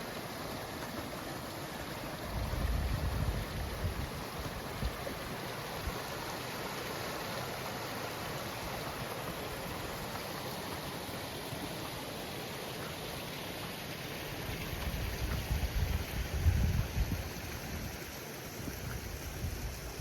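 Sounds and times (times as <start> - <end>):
rushing water: 0.0 - 20.0
wind buffeting microphone: 2.3 - 5.0, 14.8 - 18.0.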